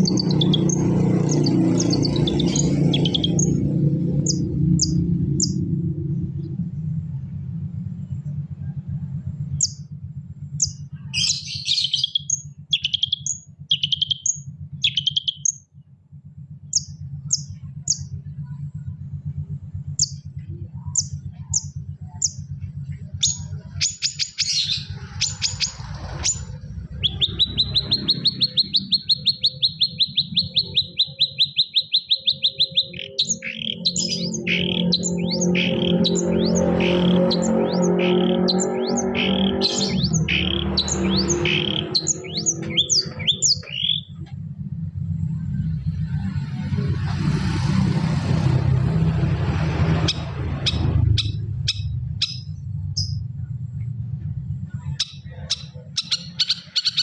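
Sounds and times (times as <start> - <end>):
songbird chirps and trill: 0.0 - 6.6, 9.4 - 9.9, 10.5 - 15.7, 16.7 - 18.1, 19.5 - 44.3, 49.6 - 53.3, 54.8 - 57.0
steady low hum: 0.0 - 57.0.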